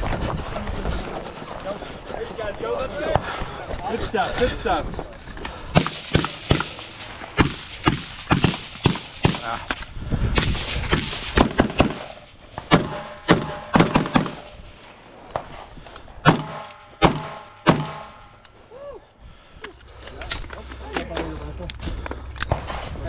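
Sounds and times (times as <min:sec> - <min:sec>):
overlapping gunshots: 0:05.7 - 0:14.8, 0:16.2 - 0:18.3.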